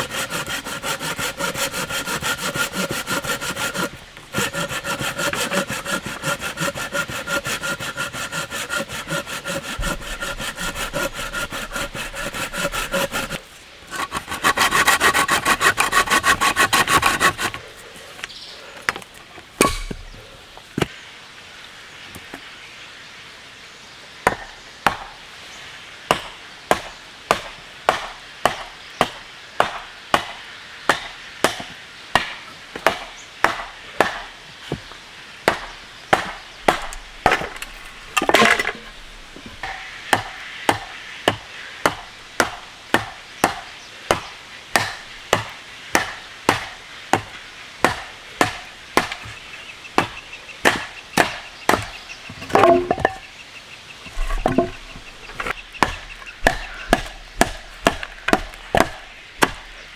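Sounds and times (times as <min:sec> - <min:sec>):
wood being chopped: 0:00.0 - 0:20.9, 0:24.3 - 0:25.2, 0:26.1 - 0:53.3, 0:54.1 - 0:59.9
scraping or rustling: 0:54.0 - 0:55.6.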